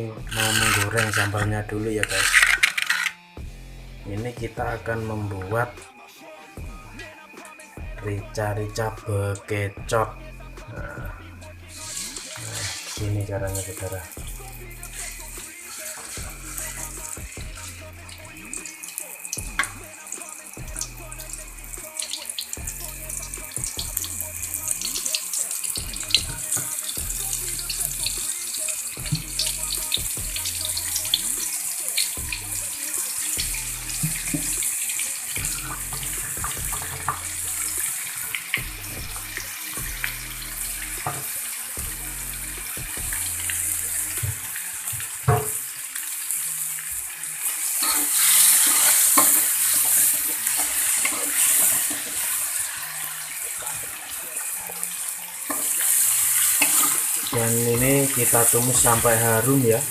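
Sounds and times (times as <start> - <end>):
spice paste sizzling in oil: 0.3 - 1.4, 14.0 - 38.6, 39.5 - 59.9
stirring clicks: 0.3 - 3.2.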